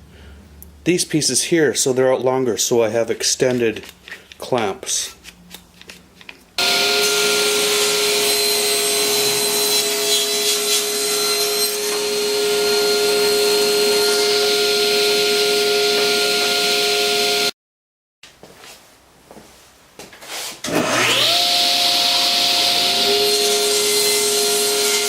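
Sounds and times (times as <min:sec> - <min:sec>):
power tool motor whining: 0:20.7 - 0:23.4.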